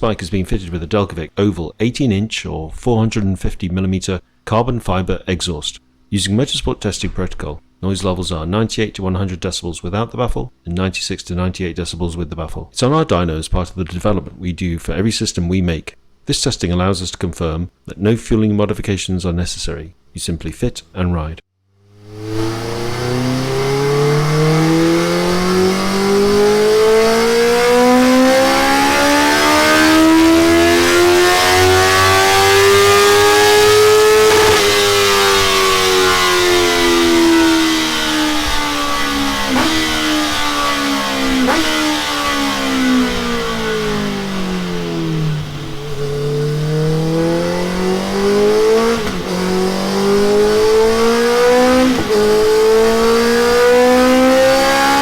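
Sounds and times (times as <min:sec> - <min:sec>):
motorcycle engine revving: 0:21.8 - 0:55.0
exhaust cracks: 0:21.9 - 0:55.0.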